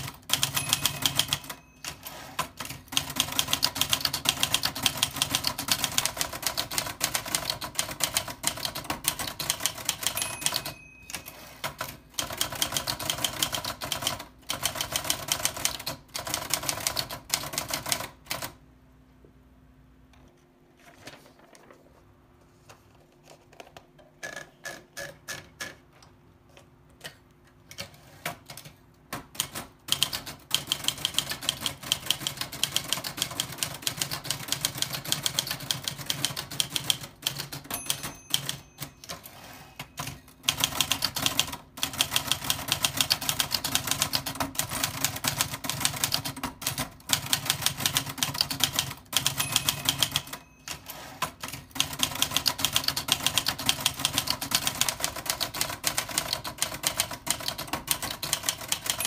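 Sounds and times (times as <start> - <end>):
typewriter typing: 0.0 - 18.6, 27.0 - 59.0.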